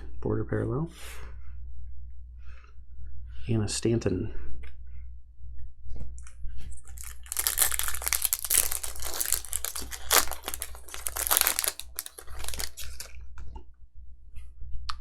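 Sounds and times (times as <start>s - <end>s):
plastic wrapper tearing and crinkling: 6.9s - 13.2s.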